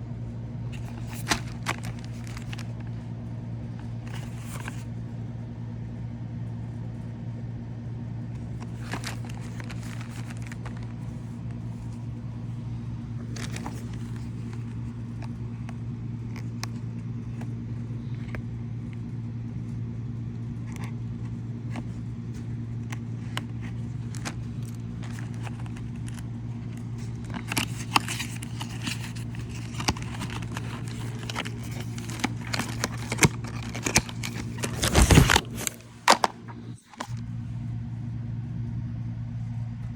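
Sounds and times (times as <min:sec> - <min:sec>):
steady low hum: 0:00.0 - 0:39.9
cable handling clicks: 0:00.7 - 0:03.0, 0:08.4 - 0:12.1, 0:13.2 - 0:18.5, 0:20.6 - 0:37.2
packaging crinkling: 0:00.7 - 0:03.0, 0:03.8 - 0:04.8, 0:08.4 - 0:18.4, 0:21.8 - 0:37.2.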